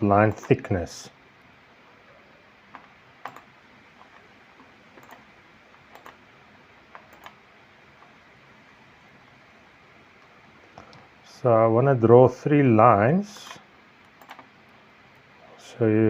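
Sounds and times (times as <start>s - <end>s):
faint room hiss: 0.0s - 16.0s
mouse and keyboard clicks: 5.0s - 6.2s, 6.9s - 7.4s, 14.0s - 14.5s.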